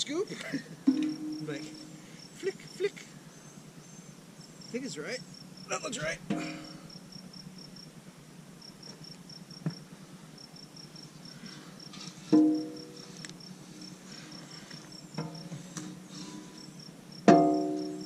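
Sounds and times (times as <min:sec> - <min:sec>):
crickets chirping: 0:00.0 - 0:18.0
backhoe bucket clanking: 0:00.6 - 0:01.9, 0:06.2 - 0:06.8
loud metallic clang: 0:00.9 - 0:02.0, 0:17.3 - 0:17.9.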